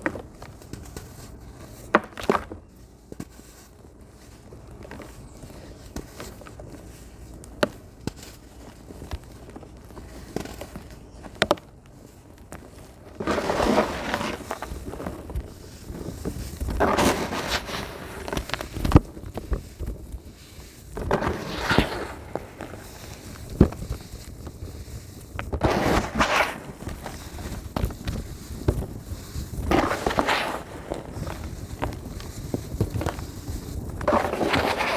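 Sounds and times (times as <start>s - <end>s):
sand crumbling into water: 13.2s - 15.3s, 16.6s - 19.0s, 21.0s - 24.1s, 25.5s - 34.9s.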